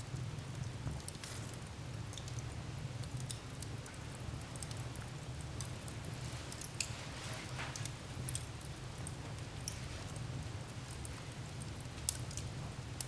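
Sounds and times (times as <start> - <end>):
wood fire crackling: 0.1 - 13.0.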